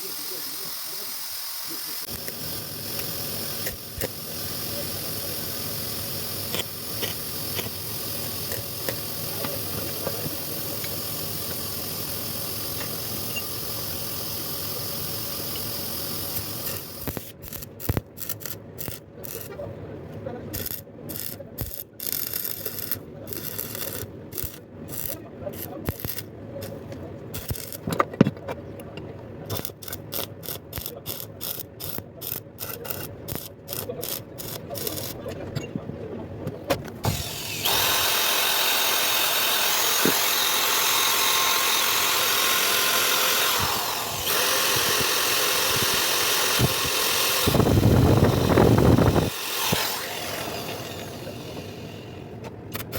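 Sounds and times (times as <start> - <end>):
welding arc crackling hiss: 0.0 - 19.5, 20.6 - 26.8, 27.4 - 27.8, 29.5 - 35.2, 37.0 - 52.2
sharp clicks: 37.0 - 51.7.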